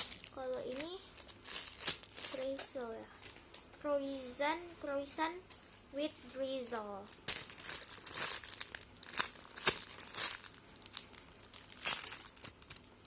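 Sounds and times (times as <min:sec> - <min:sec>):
plastic bag crinkling: 0:00.0 - 0:03.6, 0:07.0 - 0:13.0.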